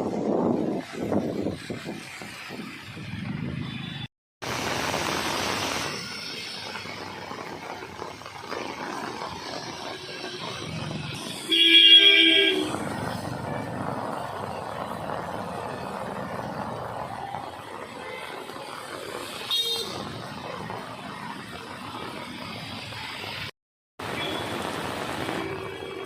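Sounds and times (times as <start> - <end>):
vehicles passing on wet road: 0.0 - 26.0
vehicle horn honking: 11.4 - 12.7.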